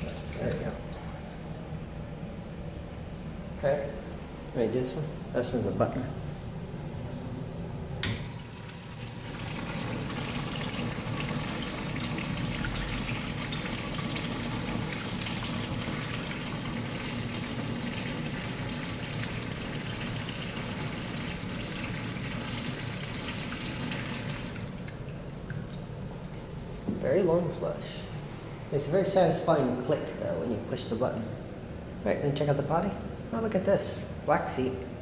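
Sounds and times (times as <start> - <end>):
toilet flushing water: 0.0 - 2.6, 8.0 - 25.8.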